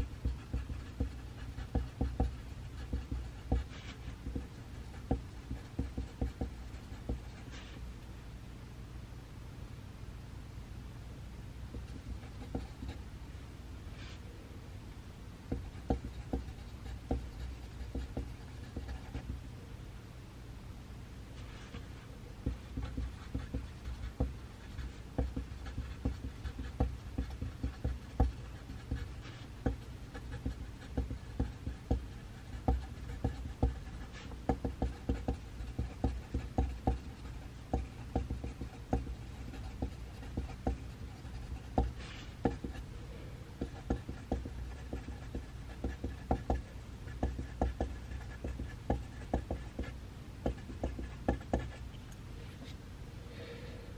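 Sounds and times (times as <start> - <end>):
pencil writing on paper: 0.0 - 7.8, 11.7 - 13.0, 15.5 - 19.4, 21.4 - 42.8, 43.6 - 51.9
low room hum: 0.0 - 53.9.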